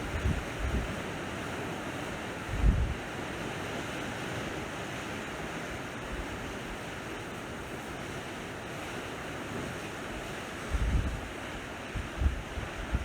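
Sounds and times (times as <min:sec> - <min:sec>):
wind rumble on microphone: 0:00.0 - 0:01.2, 0:02.4 - 0:03.1, 0:10.2 - 0:13.0
waves washing on shore: 0:00.0 - 0:13.0.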